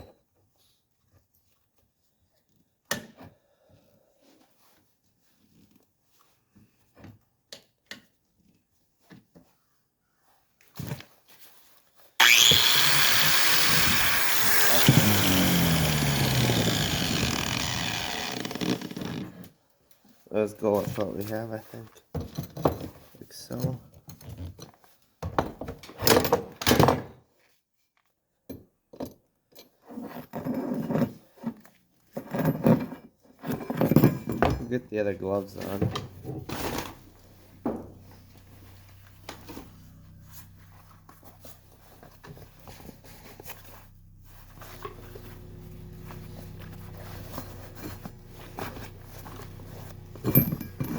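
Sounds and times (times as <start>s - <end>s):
loud power tool running: 12.2s - 19.4s, 36.1s - 50.9s
metal tools clinking and scraping: 48.6s - 50.9s.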